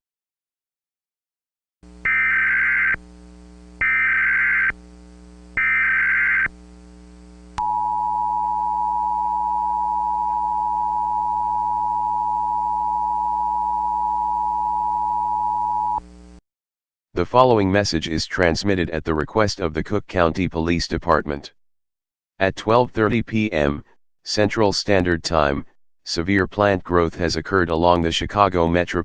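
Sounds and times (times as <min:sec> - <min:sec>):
low steady hum: 0:01.9 - 0:16.4.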